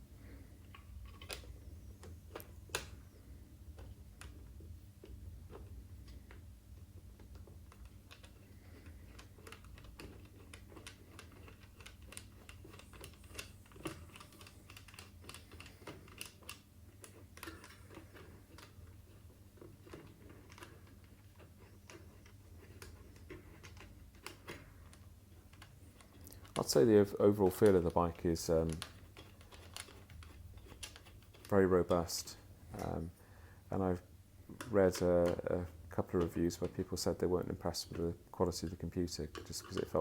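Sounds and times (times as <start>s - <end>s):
faint low hum: 0.0s - 40.0s
clicks of screws being tightened: 19.6s - 26.7s.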